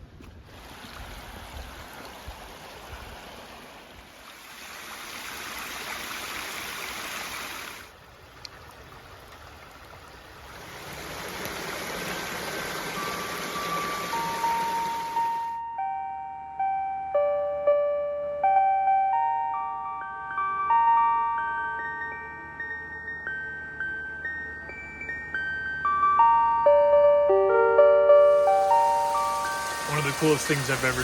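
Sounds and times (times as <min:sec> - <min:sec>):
creek water over rocks: 0:00.4 - 0:15.2, 0:28.3 - 0:31.0
piano notes: 0:12.8 - 0:31.0.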